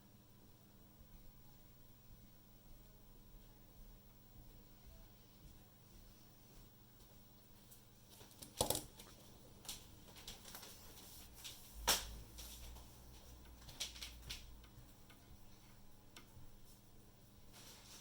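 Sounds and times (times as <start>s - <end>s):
faint low hum: 0.0s - 18.0s.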